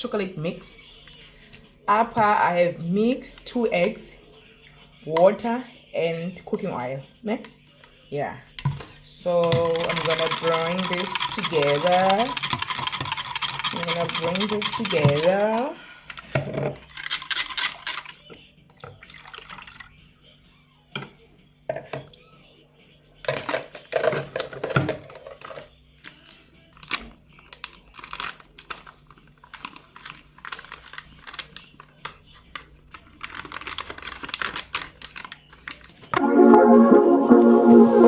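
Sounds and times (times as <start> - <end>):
utensil scraping a container: 9.6 - 15.3.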